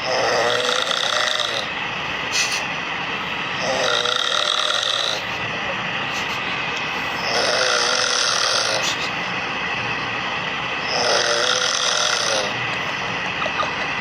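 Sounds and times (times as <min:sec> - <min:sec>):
man snoring: 0:00.0 - 0:01.7, 0:03.6 - 0:05.4, 0:07.2 - 0:09.0, 0:10.8 - 0:12.6.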